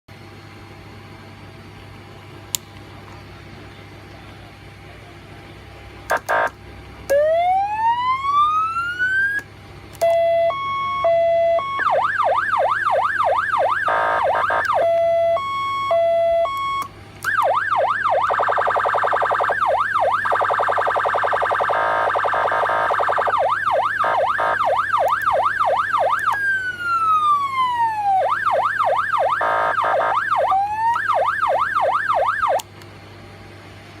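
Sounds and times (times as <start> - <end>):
electronic siren cycling tones: 6.1 - 32.7.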